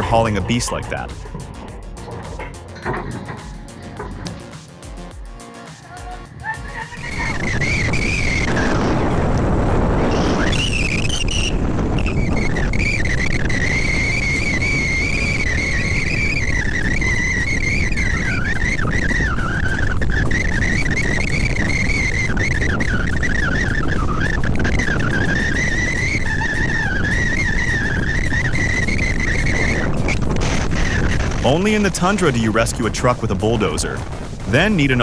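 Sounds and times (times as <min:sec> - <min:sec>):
heavy machinery rumbling: 0:00.0 - 0:05.2, 0:06.2 - 0:35.0
high wavering squeal: 0:05.5 - 0:32.6.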